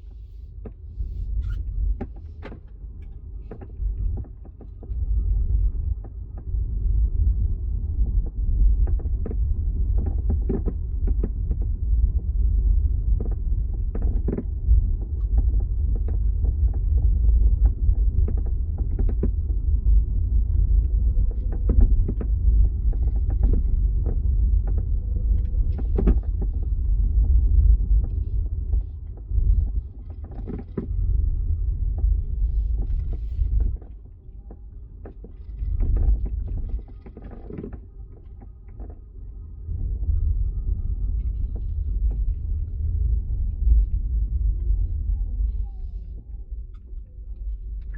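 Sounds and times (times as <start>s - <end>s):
low road rumble in car cabin: 0.0s - 47.9s
sharp rattles and creaks: 28.0s - 31.2s, 31.8s - 39.2s.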